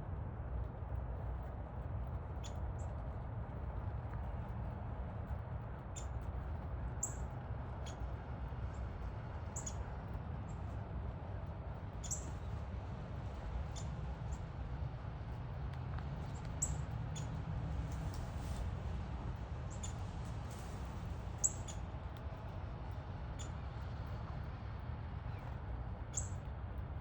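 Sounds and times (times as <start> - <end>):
low background rumble: 0.0 - 27.0
small birds chip calls: 7.0 - 7.2, 9.5 - 9.9, 12.0 - 12.5, 16.3 - 17.4, 21.4 - 21.9, 26.1 - 26.4.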